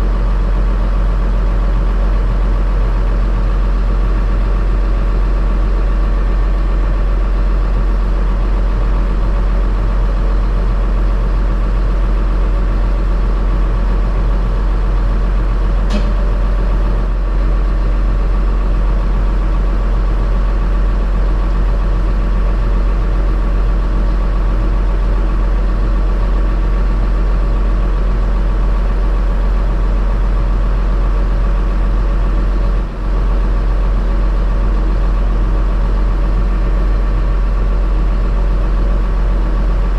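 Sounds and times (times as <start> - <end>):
heavy diesel engine running: 0.0 - 39.9
sharp click: 15.9 - 17.0.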